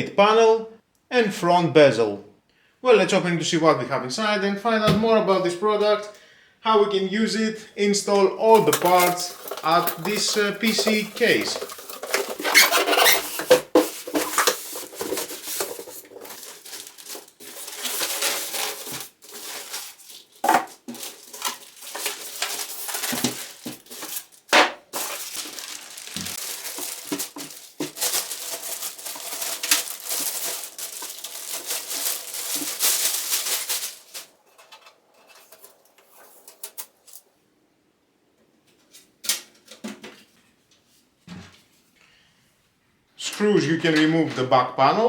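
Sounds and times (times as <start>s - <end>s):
packaging rustling and crinkling: 8.5s - 37.2s.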